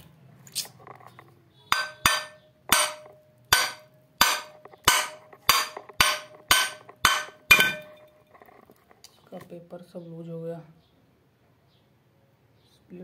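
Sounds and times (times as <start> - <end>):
hammer striking metal: 1.7 - 8.1.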